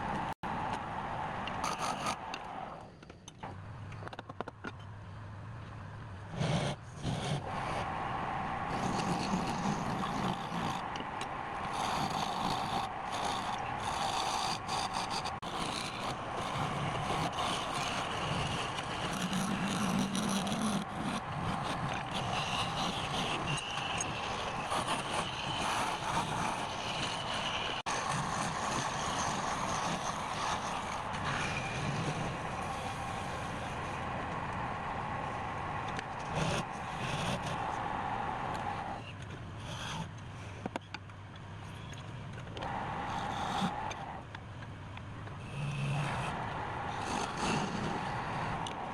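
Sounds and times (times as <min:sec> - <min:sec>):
turning tool scraping wood: 0:01.6 - 0:02.2, 0:08.7 - 0:34.0, 0:35.9 - 0:37.8, 0:42.6 - 0:44.1
wood lathe running: 0:07.1 - 0:34.4, 0:42.6 - 0:44.0.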